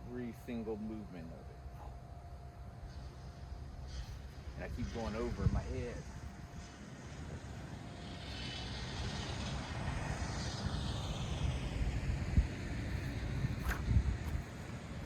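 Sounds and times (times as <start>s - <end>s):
aircraft flying past: 2.8s - 15.0s.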